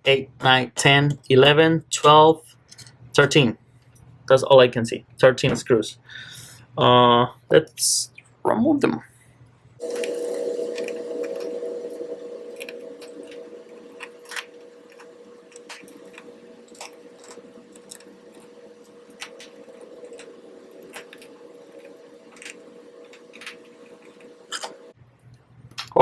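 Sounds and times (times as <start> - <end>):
steady hum: 9.8 - 25.3
screwdriver and screws clicking: 12.6 - 24.8.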